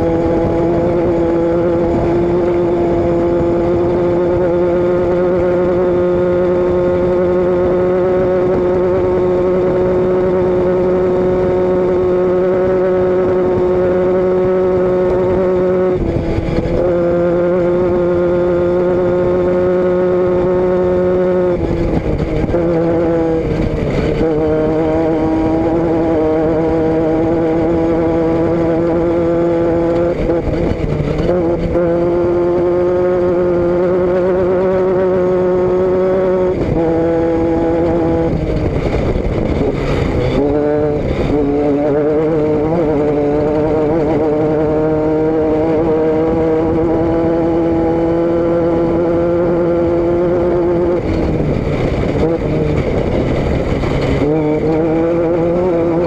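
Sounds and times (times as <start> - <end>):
vehicle engine and exhaust running: 0.0 - 56.0.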